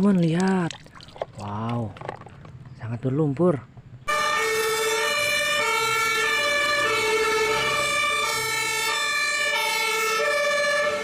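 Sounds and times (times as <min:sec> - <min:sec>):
two-tone fire engine siren: 0:04.1 - 0:11.0.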